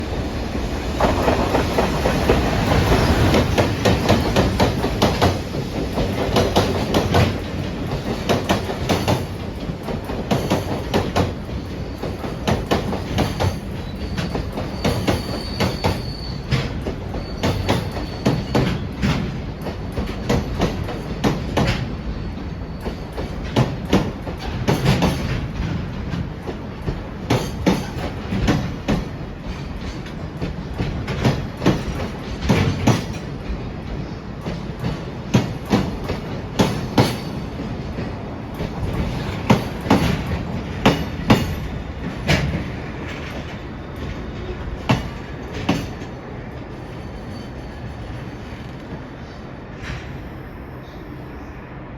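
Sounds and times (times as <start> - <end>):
train wheels clickety-clack: 0.0 - 50.4
train rumble: 0.0 - 51.9
faint high squeal: 13.8 - 18.6.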